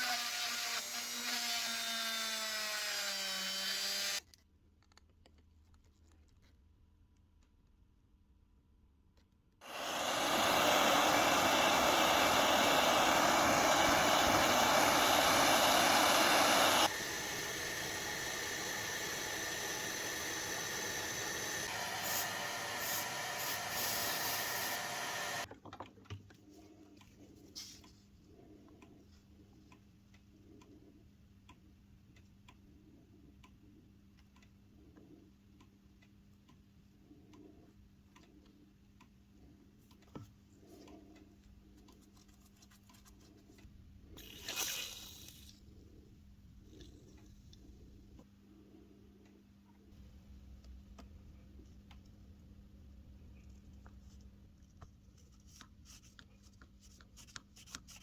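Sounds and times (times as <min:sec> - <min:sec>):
hiss of spraying air: 0:09.6 - 0:25.4.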